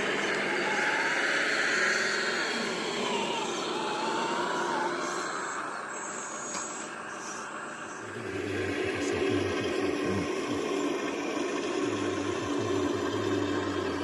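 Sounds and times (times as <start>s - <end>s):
wavering high whine: 0.0s - 14.0s
heavy machine engine running: 7.6s - 14.0s.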